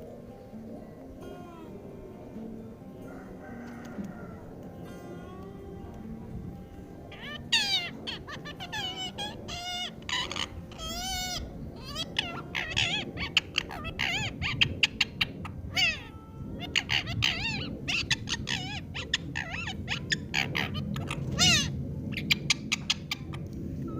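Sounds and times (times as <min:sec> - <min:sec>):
parrot warbling and squawking: 0:07.1 - 0:23.4.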